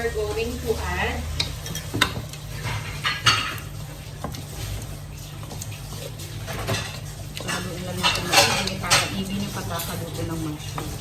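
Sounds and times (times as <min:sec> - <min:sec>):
utensil scraping frying pan: 0:00.0 - 0:11.0
utensil clinking on metal pan: 0:06.6 - 0:09.9.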